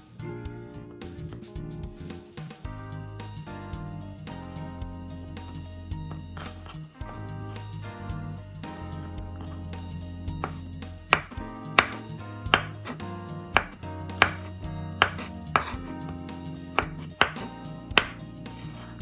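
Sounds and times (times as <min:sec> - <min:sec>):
background music: 0:00.0 - 0:19.0
knife chopping on cutting board: 0:06.1 - 0:07.6, 0:10.4 - 0:18.8.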